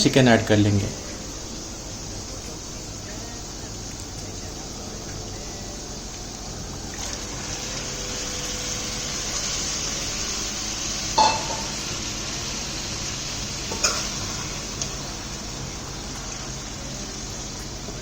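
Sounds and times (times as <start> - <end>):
chicken sizzling in a pan: 0.0 - 18.0
metal utensil clanking on pan: 11.2 - 11.8, 13.7 - 14.2.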